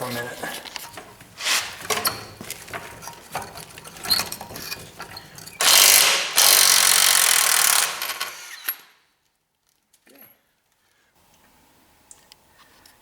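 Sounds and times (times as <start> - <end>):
fast ratcheting wrench: 5.6 - 8.9.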